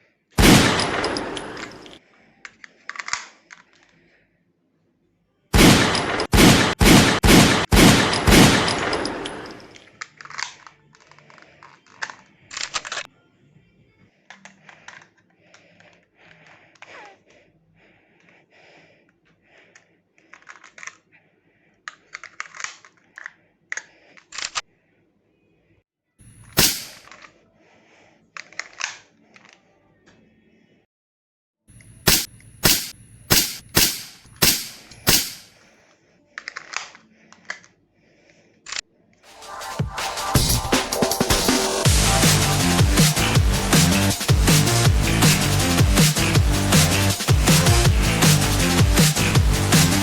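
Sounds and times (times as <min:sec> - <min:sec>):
airsoft pistol shots: 0:00.4 - 0:01.6, 0:05.6 - 0:09.4, 0:26.5 - 0:27.0, 0:32.0 - 0:35.5
pistol handling clicks and rattles: 0:00.7 - 0:04.0, 0:08.1 - 0:13.1, 0:14.3 - 0:16.0, 0:20.2 - 0:21.0, 0:21.9 - 0:24.6, 0:26.5 - 0:27.3, 0:28.4 - 0:29.6, 0:31.8 - 0:35.5, 0:36.4 - 0:37.8.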